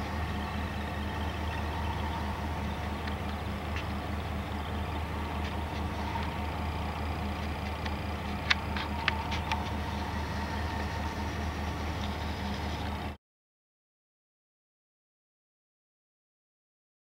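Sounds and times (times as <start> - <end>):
low mechanical hum: 0.0 - 13.2.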